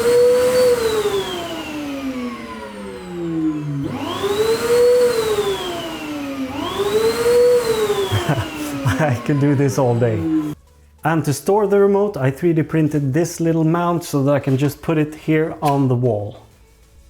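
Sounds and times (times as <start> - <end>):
dust extractor motor whine: 0.0 - 10.6.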